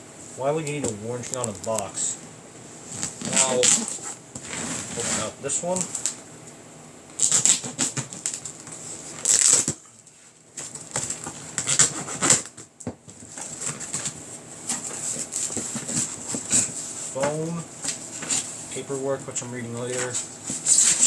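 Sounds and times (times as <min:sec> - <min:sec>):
cardboard box rustling and scraping: 0:03.0 - 0:05.4.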